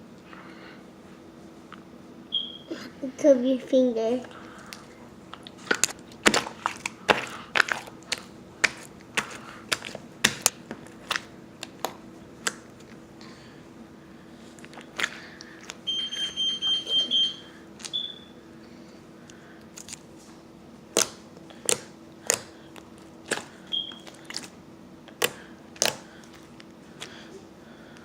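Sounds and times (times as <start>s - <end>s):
high electronic beep: 2.3s - 2.7s.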